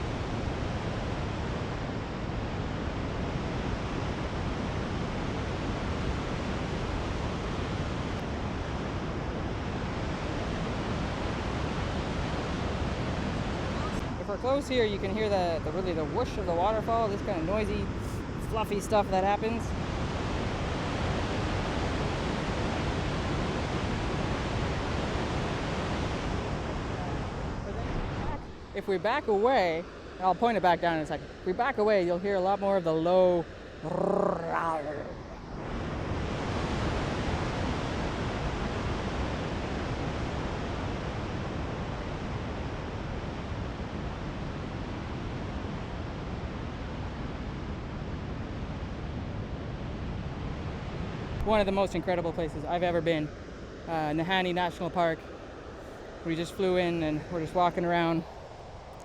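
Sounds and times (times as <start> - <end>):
waterfall roaring: 9.7 - 39.1, 50.7 - 53.3.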